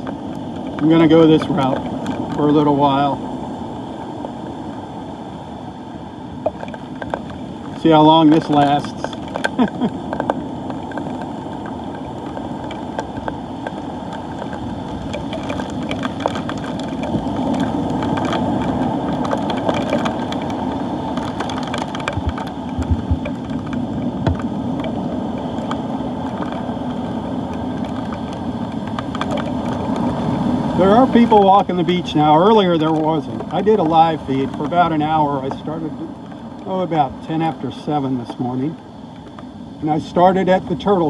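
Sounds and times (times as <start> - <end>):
raindrops ticking on plastic case: 0.0 - 5.0, 6.4 - 41.0
muffled wind and surf: 0.0 - 41.0
low knocks: 22.0 - 24.5.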